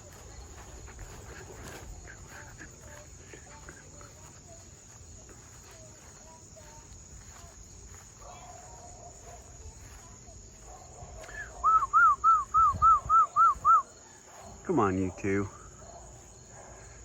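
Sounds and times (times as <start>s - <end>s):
crickets chirring: 0.0s - 17.0s
man whistling: 11.4s - 13.9s.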